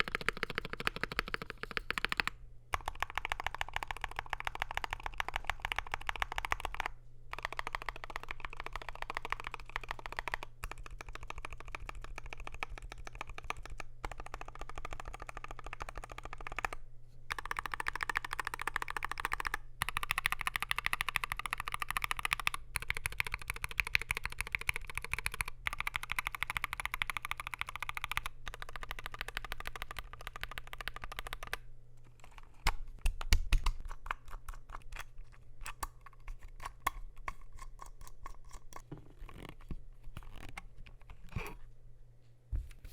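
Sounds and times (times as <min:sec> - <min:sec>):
fast typing on keyboard: 0:00.0 - 0:31.6, 0:32.2 - 0:34.8.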